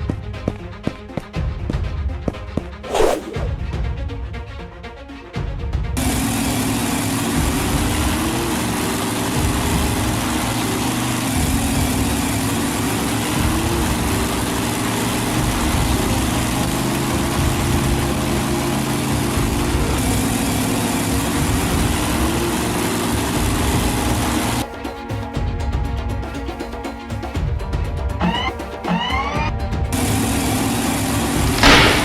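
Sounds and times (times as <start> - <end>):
heavy vehicle engine running: 6.0 - 24.6, 28.1 - 32.0.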